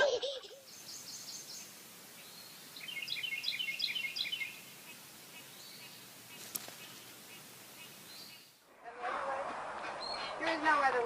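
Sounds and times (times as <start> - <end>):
small birds chirping: 0.0 - 8.7.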